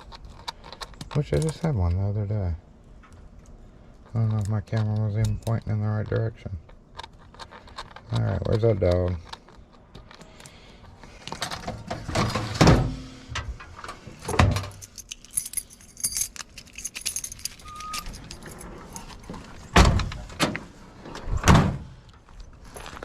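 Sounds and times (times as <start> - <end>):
metal keys jangling: 14.5 - 19.3.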